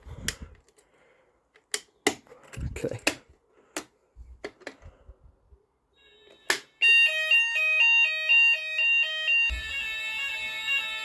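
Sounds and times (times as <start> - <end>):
fire alarm two-tone sounder: 6.0 - 11.0.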